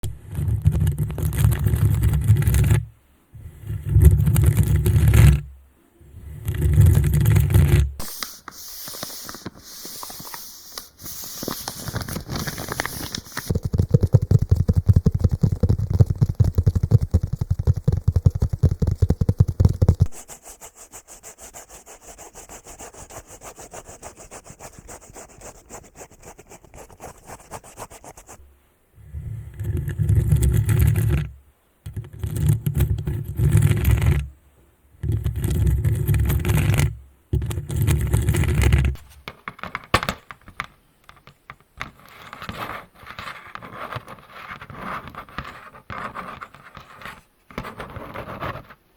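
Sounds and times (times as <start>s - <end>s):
rubbing against microphone: 0.0s - 5.5s, 6.1s - 34.3s, 35.0s - 40.0s, 41.8s - 48.9s
rapid scratching: 0.2s - 2.9s, 3.6s - 5.5s, 6.2s - 28.4s
hissing brush: 6.2s - 26.3s.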